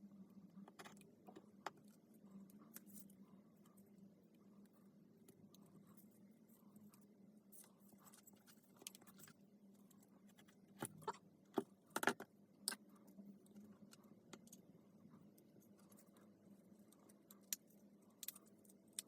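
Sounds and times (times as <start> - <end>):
faint steady hum: 0.0 - 19.0
small parts clicking and tapping: 6.9 - 14.7, 16.8 - 19.0.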